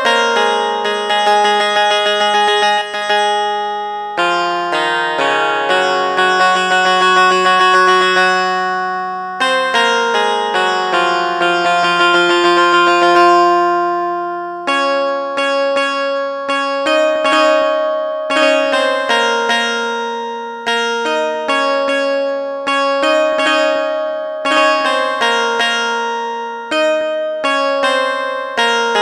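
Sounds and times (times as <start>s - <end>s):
keyboard playing plucked chords: 0.0s - 29.0s.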